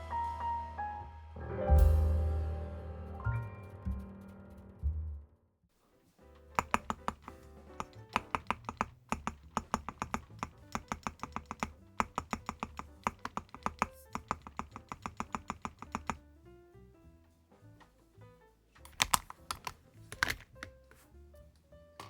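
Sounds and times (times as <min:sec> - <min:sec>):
background music: 0:00.0 - 0:05.4, 0:06.2 - 0:22.0
typing on mechanical keyboard: 0:06.6 - 0:16.2, 0:18.8 - 0:20.7.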